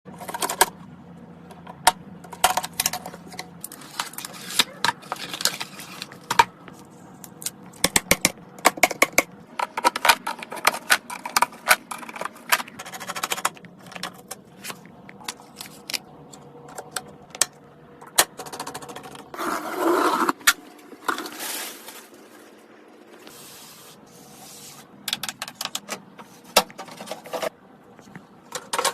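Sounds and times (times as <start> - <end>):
computer parts clicking and scraping: 1.7 - 6.5, 7.4 - 20.5.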